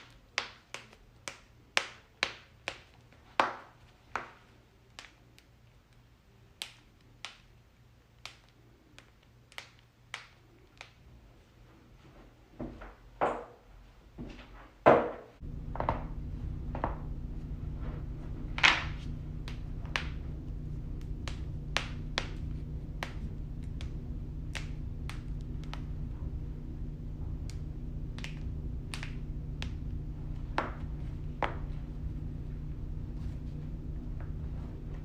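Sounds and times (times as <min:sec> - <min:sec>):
steady low hum: 0:15.4 - 0:35.0.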